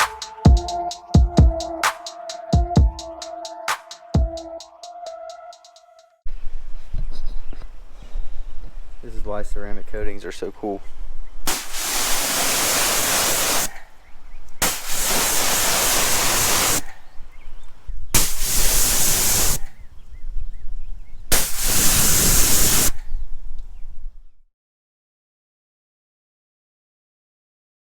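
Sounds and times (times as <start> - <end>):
pressure washer spraying water: 11.5 - 13.7, 14.6 - 16.9, 18.2 - 19.7, 21.3 - 22.9.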